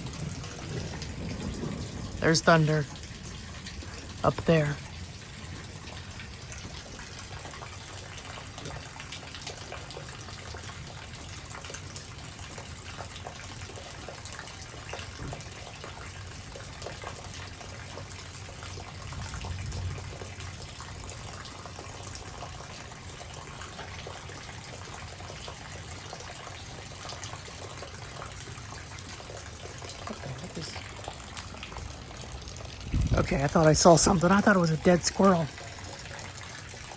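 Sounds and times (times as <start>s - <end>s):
low thunder rumble: 0.0s - 6.7s, 32.6s - 34.1s
light rain: 0.0s - 36.9s
running water: 0.0s - 36.9s.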